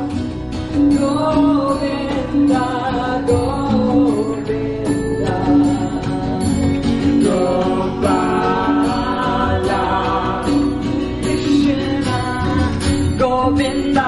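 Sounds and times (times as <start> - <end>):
bass: 0.0 - 14.0
voices chanting call-and-response: 7.0 - 12.4.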